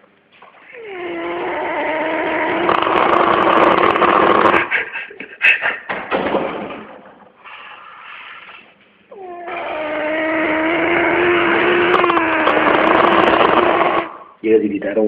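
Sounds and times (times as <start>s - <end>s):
dog snoring loudly: 0.6s - 4.7s, 9.1s - 14.4s.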